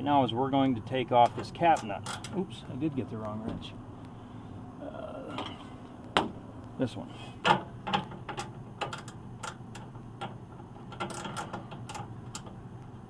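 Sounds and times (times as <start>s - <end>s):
wrench clicking on metal: 8.3s - 9.9s, 10.9s - 12.5s.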